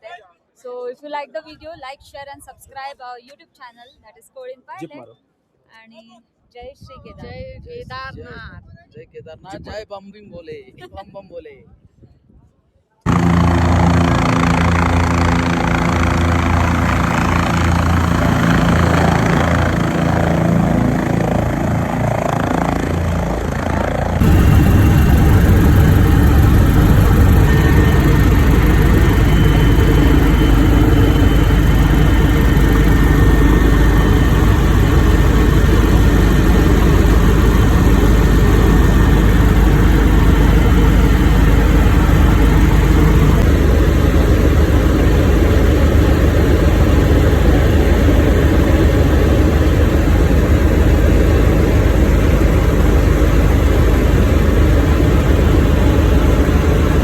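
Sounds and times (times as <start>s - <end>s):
faint high whine: 13.1s - 49.1s
helicopter turbine and rotor: 13.1s - 57.0s.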